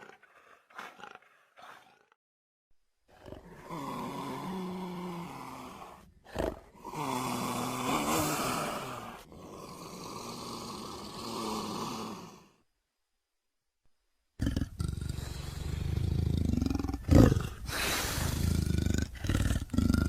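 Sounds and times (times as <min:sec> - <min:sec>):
raspy creature growling calls: 0:14.4 - 0:20.0.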